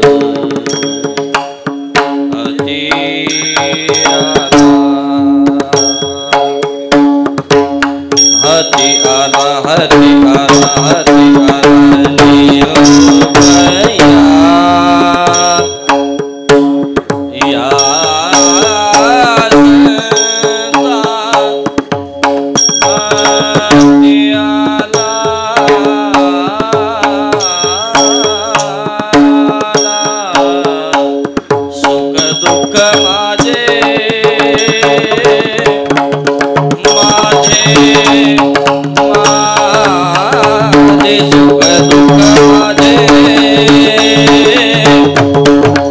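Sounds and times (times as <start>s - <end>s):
hand drum rhythm: 0.0s - 45.9s.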